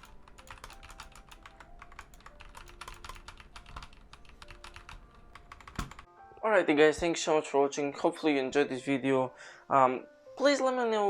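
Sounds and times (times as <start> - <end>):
rapid keyboard typing: 0.0 - 6.1.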